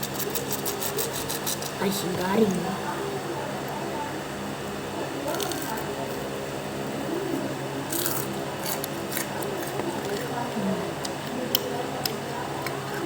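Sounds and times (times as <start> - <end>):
crunching crispy snacks: 5.3 - 6.3, 7.9 - 10.4.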